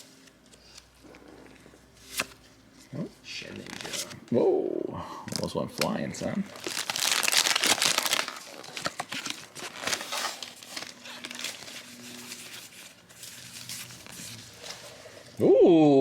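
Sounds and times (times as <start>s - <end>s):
foil wrapper crinkling: 6.5s - 15.2s.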